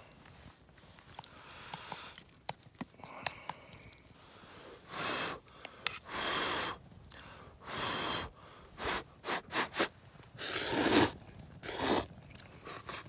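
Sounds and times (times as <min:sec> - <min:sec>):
noodles being slurped: 0:00.1 - 0:04.3, 0:08.8 - 0:13.0.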